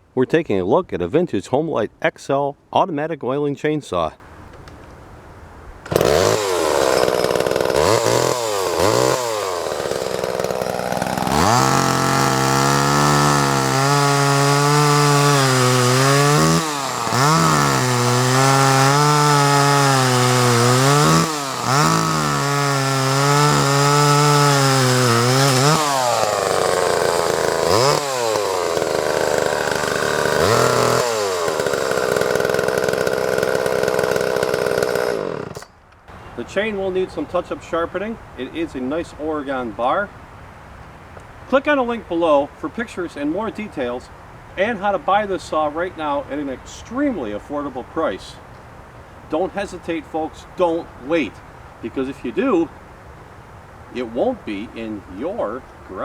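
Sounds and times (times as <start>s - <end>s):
chainsaw idling and revving: 5.8s - 35.7s.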